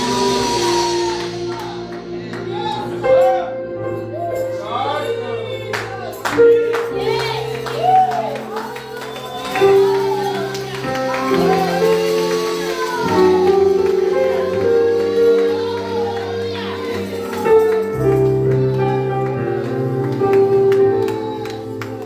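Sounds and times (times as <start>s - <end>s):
percussion hits: 0.0s - 4.6s, 6.3s - 22.0s
sustained keyboard chords: 0.0s - 22.0s
person singing: 9.6s - 22.0s.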